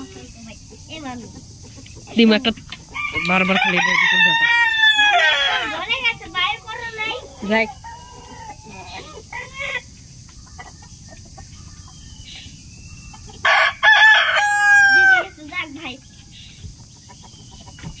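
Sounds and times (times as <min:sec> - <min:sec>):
rooster crowing: 0:02.8 - 0:09.8, 0:13.3 - 0:15.6.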